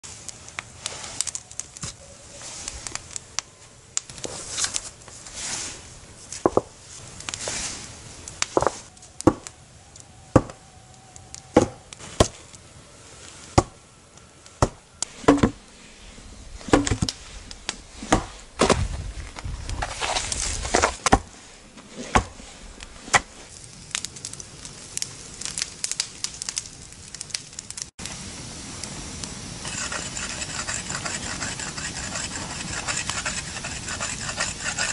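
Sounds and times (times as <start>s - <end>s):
wood being chopped: 8.5s - 9.5s, 10.3s - 10.6s, 11.6s - 12.4s, 13.6s - 13.8s, 14.6s - 15.6s, 16.6s - 17.1s, 18.0s - 18.9s, 22.1s - 22.4s.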